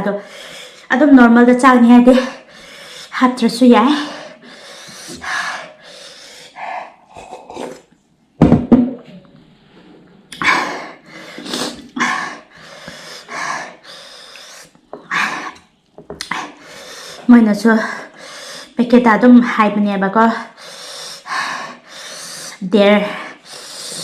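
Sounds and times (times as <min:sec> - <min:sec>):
person panting: 0:02.1 - 0:03.2, 0:03.8 - 0:07.9, 0:10.4 - 0:15.6, 0:16.3 - 0:18.8, 0:20.4 - 0:24.0.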